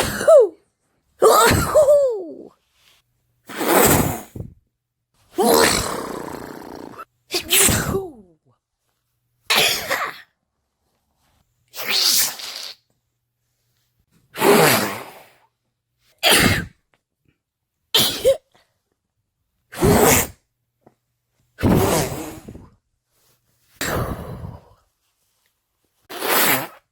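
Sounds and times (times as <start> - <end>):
woman sneezing: 0.0 - 0.6, 1.2 - 2.5, 5.4 - 8.2, 9.5 - 10.3, 16.2 - 16.8, 18.0 - 18.5.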